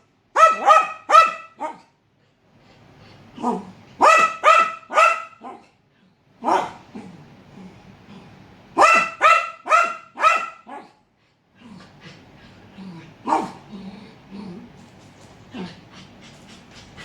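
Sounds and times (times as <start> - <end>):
dog barking: 0.3 - 1.9, 3.4 - 5.7, 6.4 - 6.9, 8.8 - 11.0, 13.3 - 13.6.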